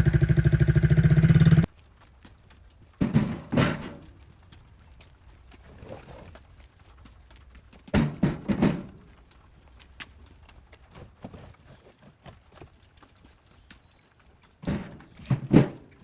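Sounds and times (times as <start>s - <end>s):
objects clunking down: 2.8s - 6.4s, 7.7s - 9.4s, 14.4s - 16.0s.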